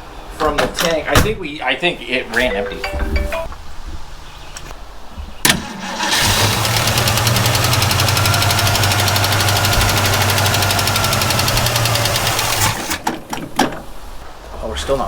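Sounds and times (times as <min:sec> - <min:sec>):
starter clunk: 0:05.4 - 0:13.8
engine cranking without firing: 0:05.5 - 0:13.1.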